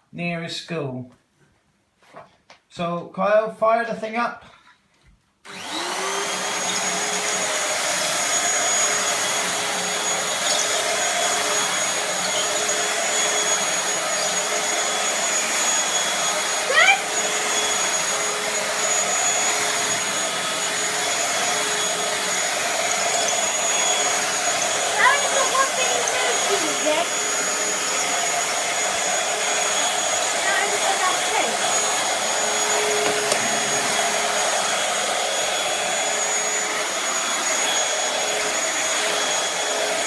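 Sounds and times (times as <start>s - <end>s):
vacuum cleaner motor whining: 5.4s - 40.0s.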